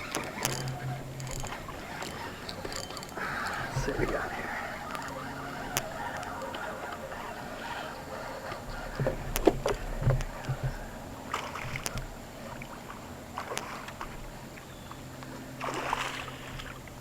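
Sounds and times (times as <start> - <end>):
water sloshing: 0.0 - 17.0
knocks against boat hull: 8.7 - 12.2.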